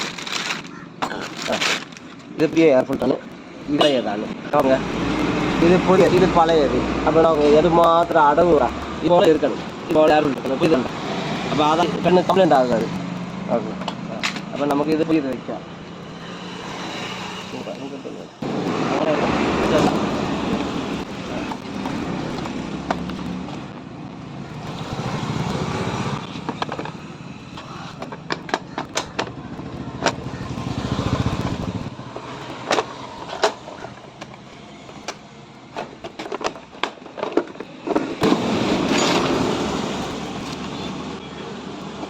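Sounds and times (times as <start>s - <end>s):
clicks of hand tools and plastic parts: 0.0s - 3.4s, 7.7s - 11.0s, 13.8s - 15.5s, 26.2s - 29.4s, 32.1s - 38.3s
noisy background: 0.0s - 42.0s.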